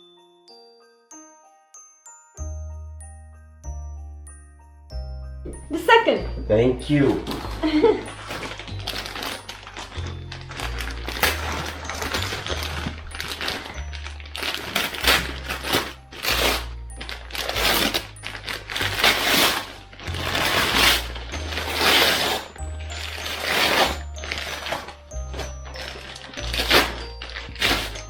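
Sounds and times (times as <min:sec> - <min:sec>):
wrapping paper tearing and crumpling: 0:07.2 - 0:28.0.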